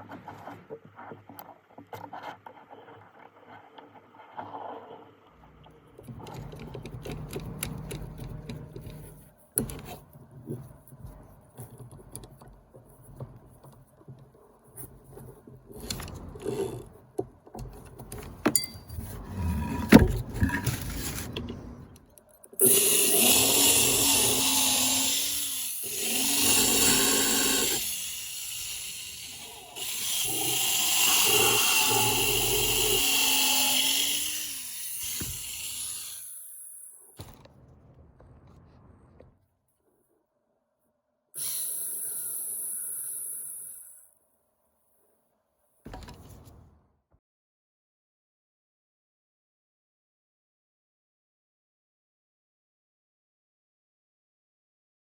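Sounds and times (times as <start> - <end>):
electric drill motor whine: 22.6 - 36.6.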